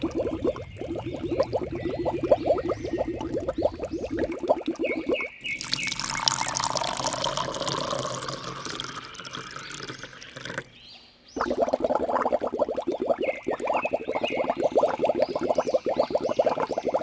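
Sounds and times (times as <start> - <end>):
water pouring and trickling: 0.0 - 10.8, 11.4 - 17.0.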